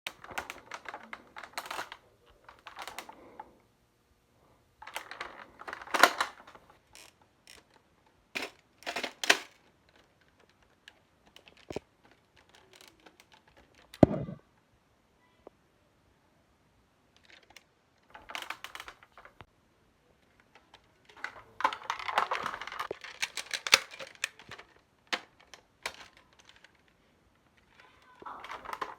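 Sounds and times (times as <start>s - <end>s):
plastic toy blaster reloading clicks: 4.9s - 6.4s, 8.4s - 9.6s, 21.2s - 26.8s
sharp plastic clack: 11.3s - 14.4s, 20.5s - 26.7s.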